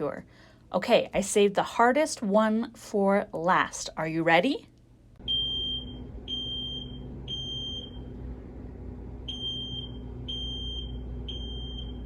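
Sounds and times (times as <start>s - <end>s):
low steady hum: 0.0s - 12.0s
smoke alarm beeping: 5.2s - 8.1s, 9.3s - 12.0s.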